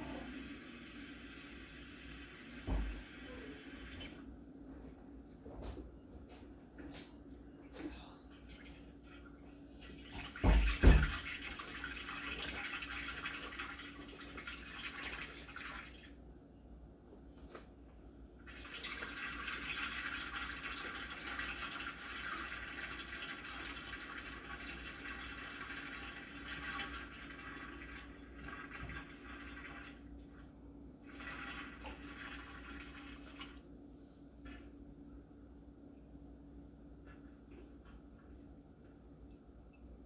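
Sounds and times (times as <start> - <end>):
tap water running into sink: 0.0 - 4.2, 9.9 - 16.1, 18.5 - 30.0, 31.1 - 33.6
dishes knocking in sink: 10.2 - 11.3.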